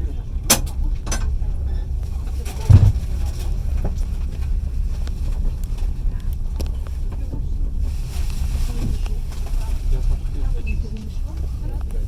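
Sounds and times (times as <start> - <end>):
train wheels rumbling on rails: 0.0 - 12.0
sharp clicks and knocks: 0.5 - 1.4, 2.6 - 3.2.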